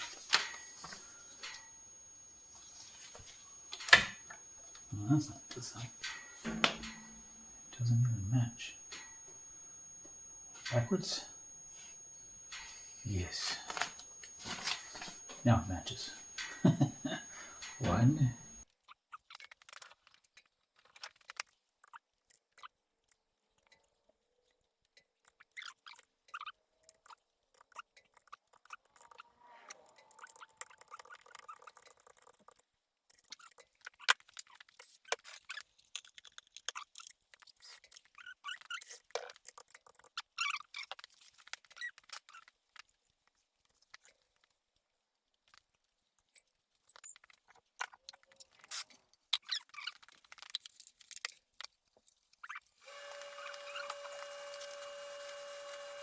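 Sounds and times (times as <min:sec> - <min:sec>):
clicks and scrapes of hand tools: 0:02.5 - 0:07.9.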